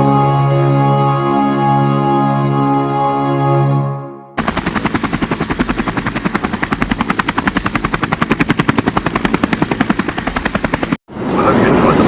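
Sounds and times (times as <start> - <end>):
boat engine chugging: 4.4 - 11.0.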